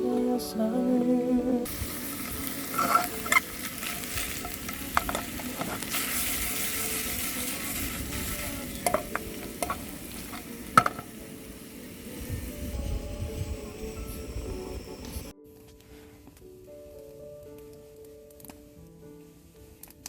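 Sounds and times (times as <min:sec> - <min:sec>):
firewood burning crackling: 0:01.6 - 0:15.3.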